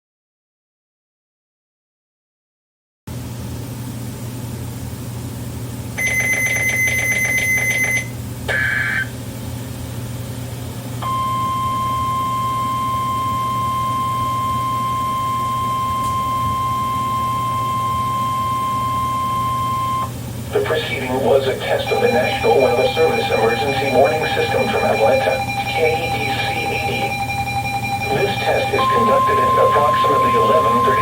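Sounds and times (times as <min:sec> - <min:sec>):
static hum: 0:03.5 - 0:31.0
single-pitch warning alarm tone: 0:06.0 - 0:09.1, 0:11.0 - 0:31.0
buzzy digital data tones: 0:13.5 - 0:31.0.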